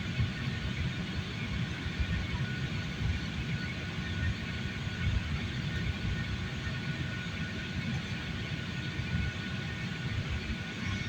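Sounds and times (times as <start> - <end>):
engine and airflow rumble: 0.0 - 11.0
faint high whine: 10.1 - 11.0.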